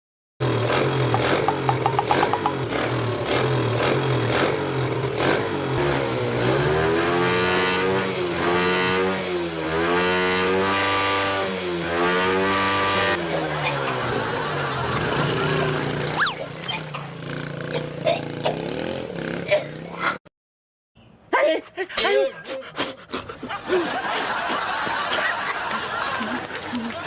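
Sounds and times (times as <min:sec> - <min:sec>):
motorbike engine revving: 0:00.4 - 0:20.0.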